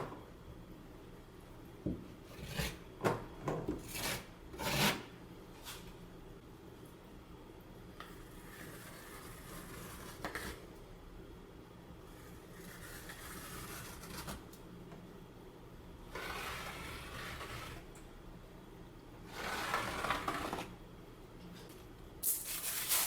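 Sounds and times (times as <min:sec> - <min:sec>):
trowel scraping adhesive on wall: 0:03.8 - 0:05.1, 0:16.2 - 0:17.9.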